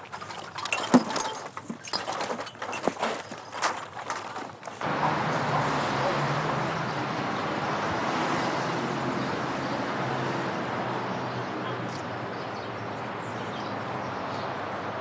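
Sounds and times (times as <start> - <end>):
low engine hum: 4.6 - 15.0
traffic noise: 4.8 - 15.0.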